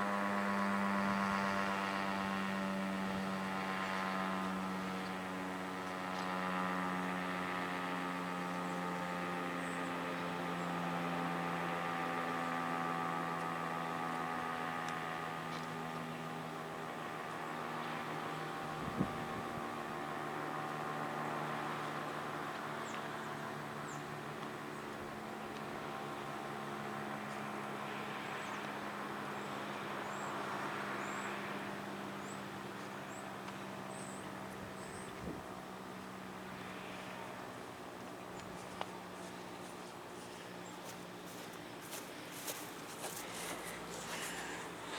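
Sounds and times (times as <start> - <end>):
steady low hum: 32.2 - 44.9.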